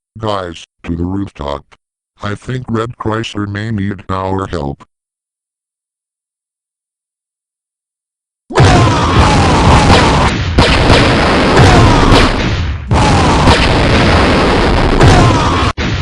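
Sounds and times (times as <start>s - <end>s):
explosion-like booming: 8.5s - 16.0s.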